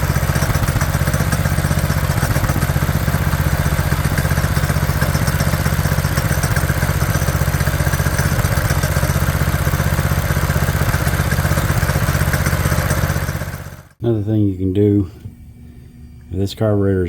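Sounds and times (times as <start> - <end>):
small engine idling: 0.0 - 14.0.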